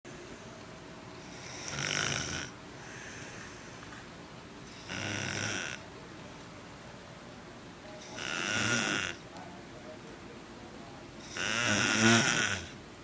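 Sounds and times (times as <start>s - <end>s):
person snoring: 4.8s - 5.8s, 8.1s - 9.2s, 11.3s - 12.8s.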